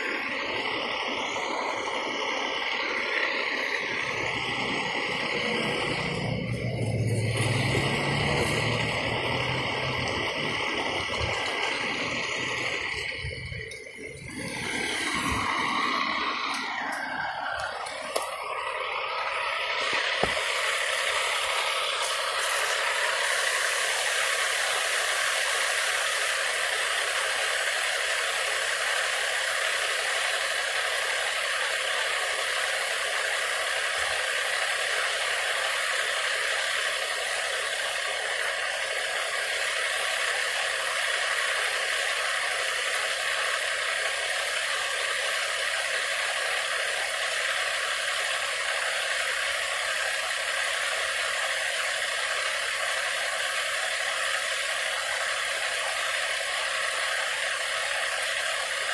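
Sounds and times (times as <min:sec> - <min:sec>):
mechanical whirring: 0:00.0 - 0:29.9.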